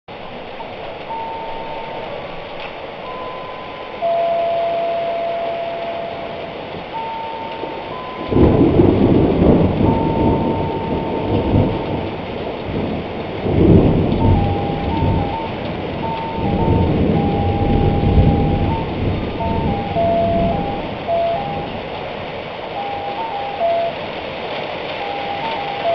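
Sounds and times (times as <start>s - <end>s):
steady rain: 0.1s - 25.9s
thunder rolling: 0.3s - 25.9s
electronic tones hopping pitch: 3.0s - 8.7s, 9.8s - 12.0s, 14.2s - 21.8s, 22.8s - 24.0s.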